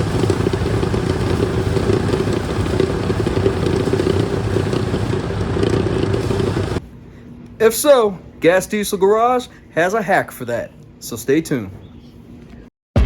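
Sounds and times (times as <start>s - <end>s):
mirror buzzing and rattling: 0.0s - 6.8s
truck engine hum: 0.0s - 6.8s.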